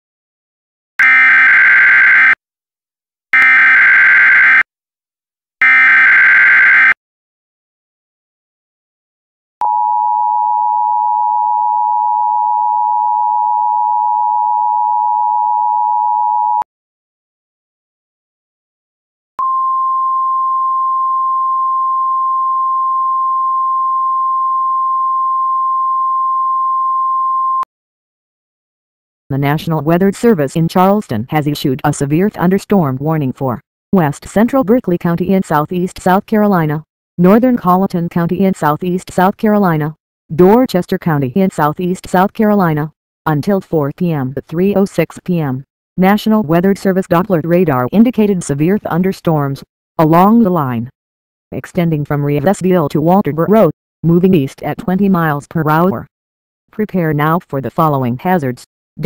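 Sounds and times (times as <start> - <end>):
high pure alarm tone: 1.0 - 2.4, 3.4 - 4.7, 5.6 - 7.0.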